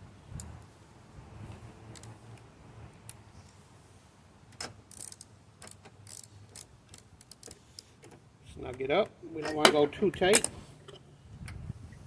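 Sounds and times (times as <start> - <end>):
ratchet clicking: 4.6 - 7.9.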